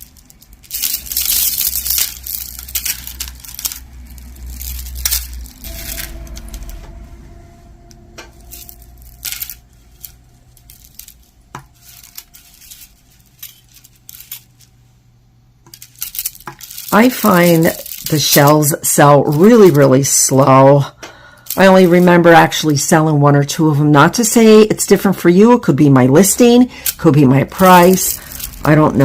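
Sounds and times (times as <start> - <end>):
jewelry pieces clinking: 0.0 - 6.9, 8.3 - 14.8, 15.7 - 20.6, 21.4 - 22.8, 26.8 - 29.0.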